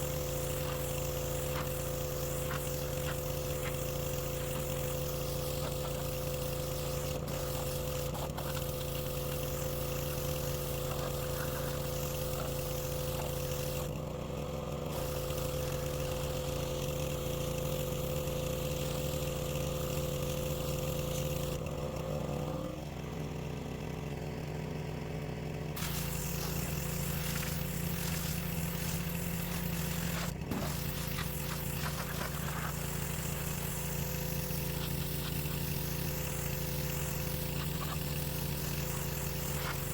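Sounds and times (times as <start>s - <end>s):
spray hissing: 0.0s - 13.9s, 14.9s - 17.0s, 25.8s - 39.9s
pressure washer engine running: 0.0s - 39.9s.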